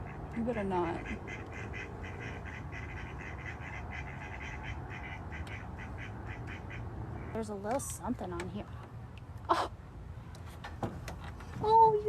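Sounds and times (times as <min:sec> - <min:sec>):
rapid quack-like animal calls: 0:01.0 - 0:07.3.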